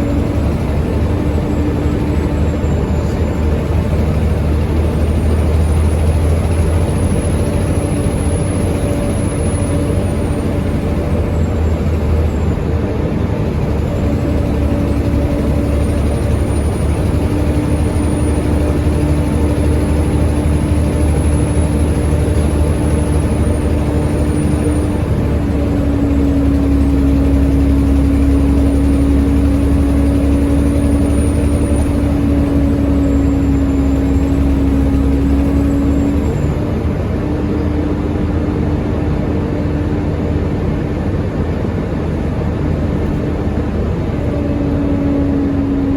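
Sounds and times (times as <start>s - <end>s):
bus diesel engine drone: 0.0s - 45.9s.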